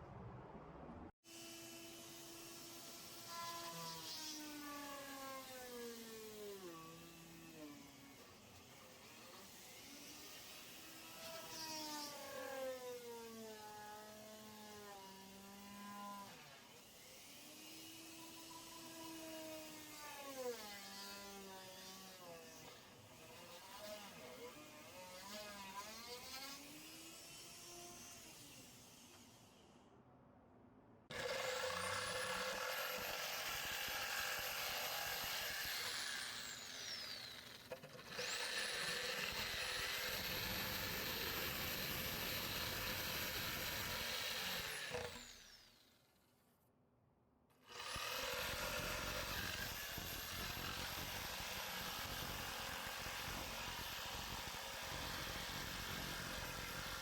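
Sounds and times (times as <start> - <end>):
grinding or cutting noise: 31.1 - 45.6, 47.7 - 57.0
power tool motor whine: 31.1 - 45.9, 47.7 - 57.0.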